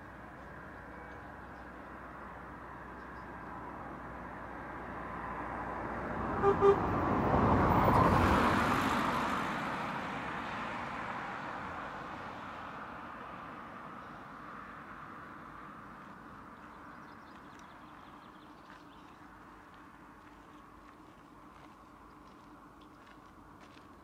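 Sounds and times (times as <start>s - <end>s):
vehicle passing: 1.7s - 22.0s
vehicle horn toots: 6.3s - 7.0s.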